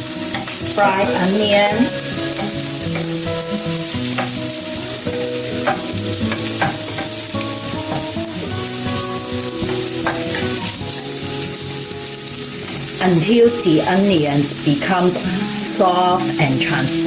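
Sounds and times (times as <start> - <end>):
stirring clicks: 0.0 - 1.0, 1.9 - 13.1
onion sizzling in a pan: 0.0 - 17.0.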